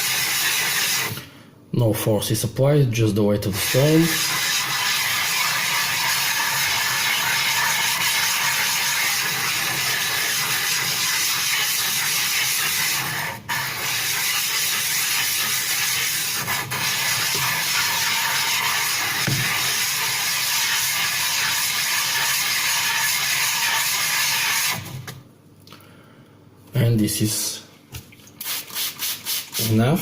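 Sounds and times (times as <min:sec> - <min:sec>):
stone grinding on wet grit: 0:04.0 - 0:24.3.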